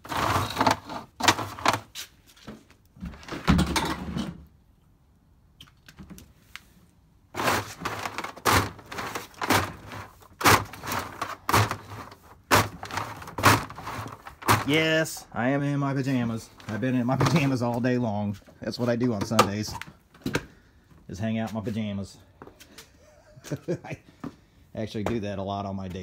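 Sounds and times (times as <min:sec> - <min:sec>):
objects knocking and clunking: 0:00.0 - 0:04.6, 0:07.3 - 0:15.0, 0:16.5 - 0:17.8, 0:19.0 - 0:20.6.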